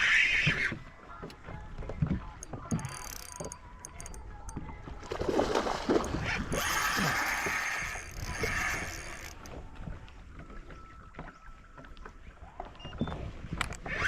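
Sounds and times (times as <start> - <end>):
water splashing: 4.8 - 9.6.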